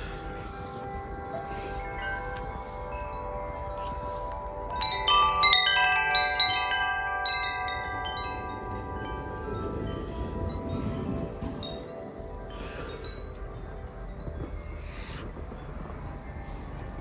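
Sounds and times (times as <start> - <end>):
metal wind chimes ringing: 0.0 - 17.0.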